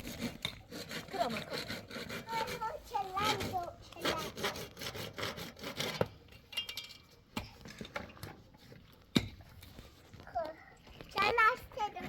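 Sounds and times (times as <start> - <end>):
objects knocking and clinking: 6.3 - 8.4.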